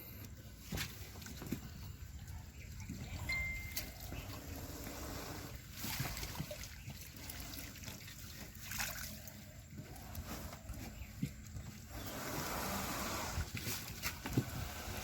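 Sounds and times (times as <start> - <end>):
water trickling and sloshing: 0.1 - 15.0
water splashes: 3.6 - 9.5.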